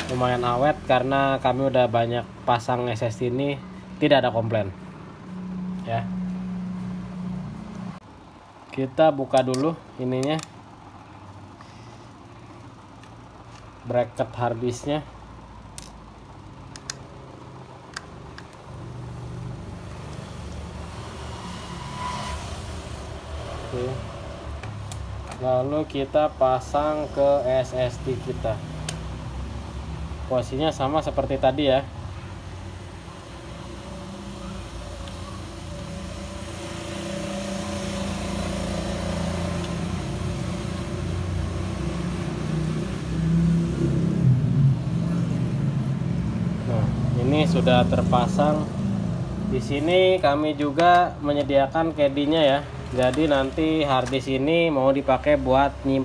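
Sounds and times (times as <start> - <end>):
vehicle engine running: 0.0 - 8.0, 22.6 - 54.7.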